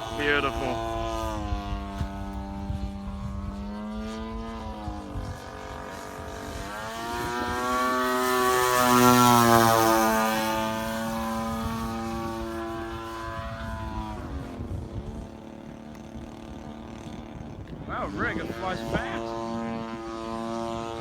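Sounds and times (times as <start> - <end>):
model plane engine buzzing: 0.0 - 21.0.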